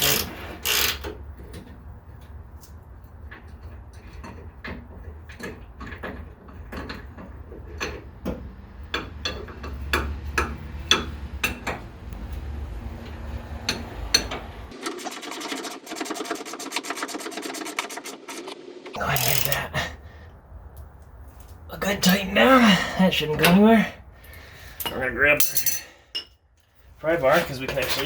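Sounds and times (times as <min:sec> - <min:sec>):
hand ratchet clicking: 0:00.0 - 0:01.1, 0:19.0 - 0:19.8.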